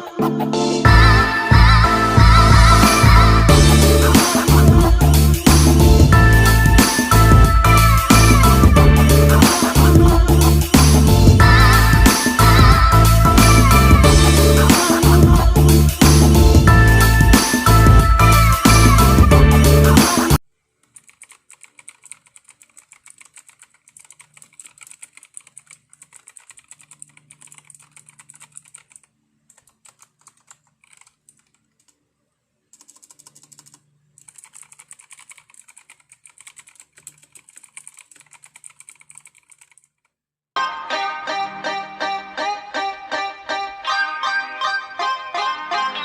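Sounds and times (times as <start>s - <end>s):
music: 0.0s - 20.4s, 40.6s - 46.0s
mechanical keyboard clicking: 20.8s - 32.0s, 32.7s - 40.1s.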